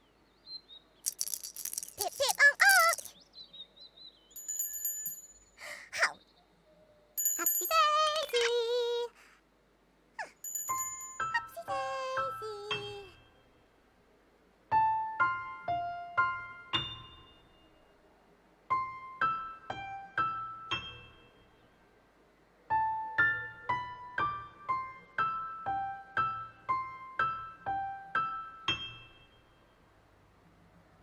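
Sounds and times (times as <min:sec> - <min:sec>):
piano-like keyboard tune: 0:14.7 - 0:17.5, 0:18.8 - 0:21.5, 0:22.7 - 0:29.4.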